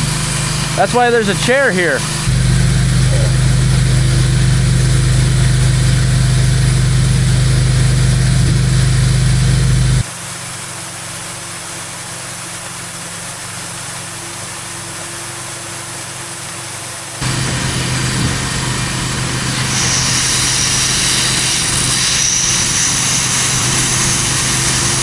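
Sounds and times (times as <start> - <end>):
engine running: 0.0 - 10.1, 16.9 - 25.0
steady mechanical hum: 0.0 - 25.0.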